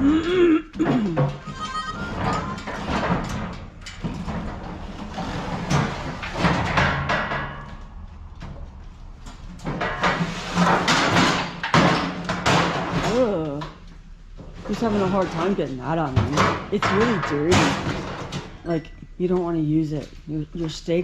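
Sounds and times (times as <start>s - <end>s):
metal grill clattering and scraping: 0.9s - 18.8s.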